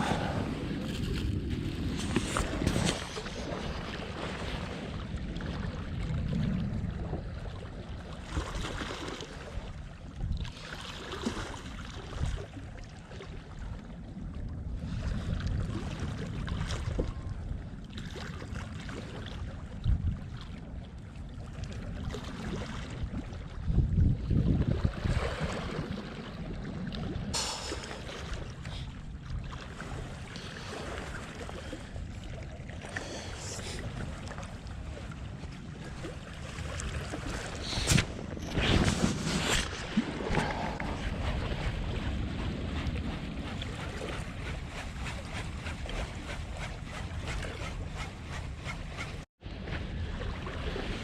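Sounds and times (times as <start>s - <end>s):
wind buffeting microphone: 0.0s - 10.5s, 22.9s - 51.0s
sea noise: 0.0s - 51.0s.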